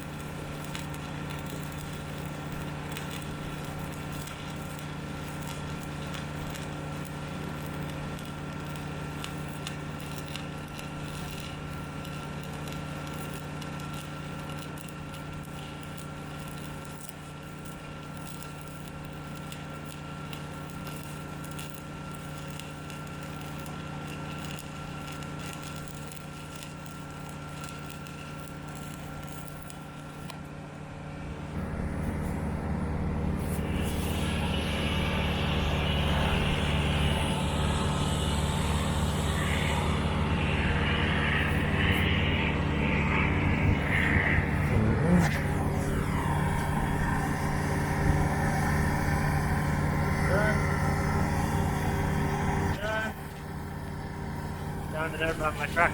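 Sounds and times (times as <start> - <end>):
scratchy crackling and clicks: 0.0 - 30.4
engine droning: 0.0 - 55.9
deeper louder engine: 30.8 - 55.9.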